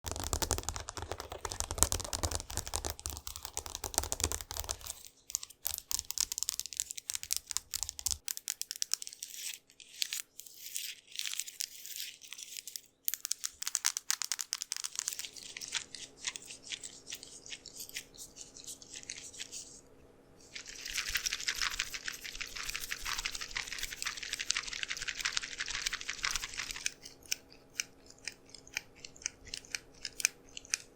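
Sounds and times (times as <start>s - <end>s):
tapping and scratching on wood: 0.0s - 9.1s.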